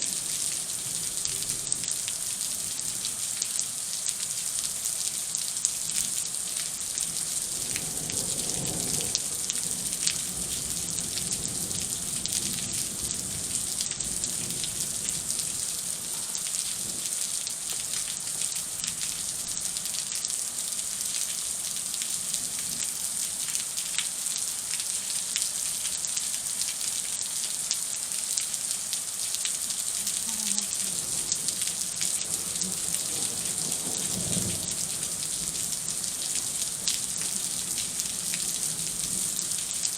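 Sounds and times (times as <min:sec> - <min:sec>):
heavy rain hissing: 0:00.0 - 0:21.8, 0:27.2 - 0:39.9.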